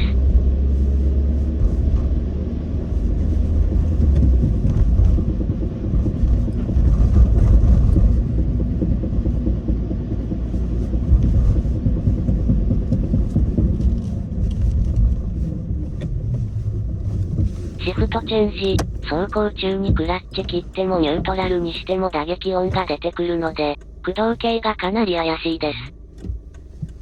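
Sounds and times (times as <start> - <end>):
road and engine rumble: 0.0 - 27.0
repeated knocking from car: 4.0 - 14.0.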